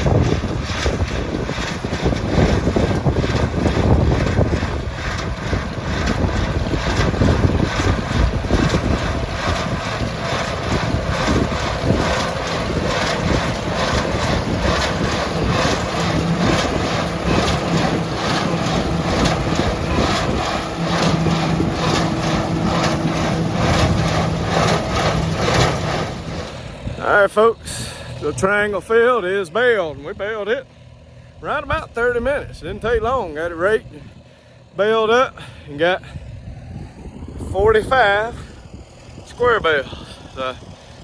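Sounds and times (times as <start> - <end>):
wind buffeting microphone: 0.0 - 30.4, 31.3 - 41.0
hay equipment mechanical clatter: 0.0 - 30.6, 31.3 - 41.0
tractor engine: 0.0 - 41.0.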